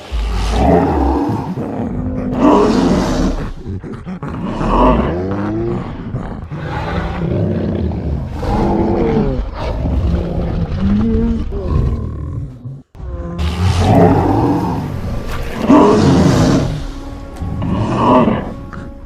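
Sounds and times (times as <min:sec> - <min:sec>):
gorilla roaring and growling: 0:00.0 - 0:19.0.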